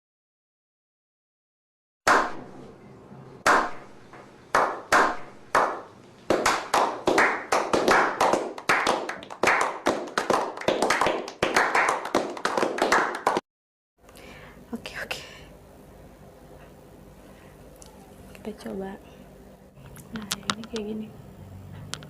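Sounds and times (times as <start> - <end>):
sharp clap-like hits: 2.1 - 2.5, 3.4 - 13.4.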